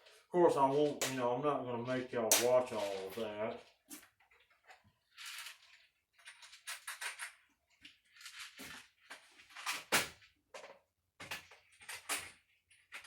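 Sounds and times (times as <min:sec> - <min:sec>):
objects rustling and clattering: 0:00.0 - 0:13.0.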